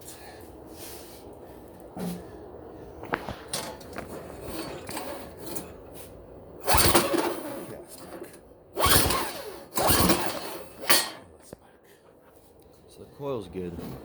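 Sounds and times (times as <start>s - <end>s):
recoil starter rope pull: 3.5s - 5.7s, 6.6s - 11.3s
engine cranking whir: 3.5s - 5.8s, 6.6s - 11.3s.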